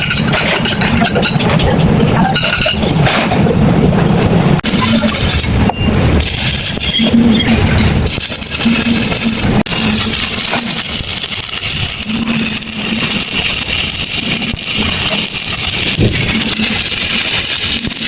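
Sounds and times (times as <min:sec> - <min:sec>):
arc welding crackling hiss: 0:08.0 - 0:18.0.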